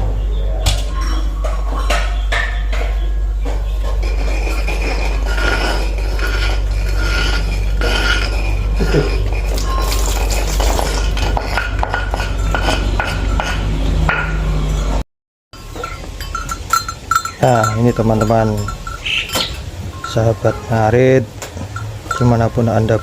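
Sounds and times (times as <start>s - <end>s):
steady low hum: 0.0s - 15.0s, 15.6s - 23.0s
metal utensils clinking and scraping: 3.8s - 13.8s, 15.6s - 23.0s.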